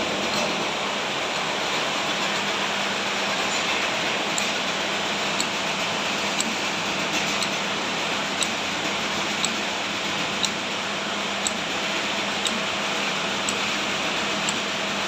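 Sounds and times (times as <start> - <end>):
moulding machine whirring: 1.9 - 15.0
sharp regular machine click: 5.3 - 7.7, 8.3 - 10.7, 11.4 - 11.7, 12.4 - 12.7, 14.4 - 14.7.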